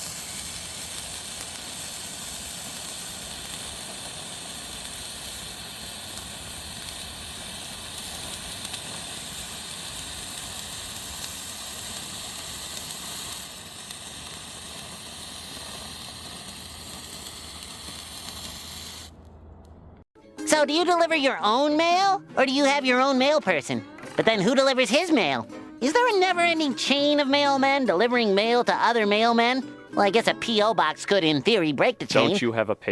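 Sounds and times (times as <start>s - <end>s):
firework hissing: 0.0s - 19.3s.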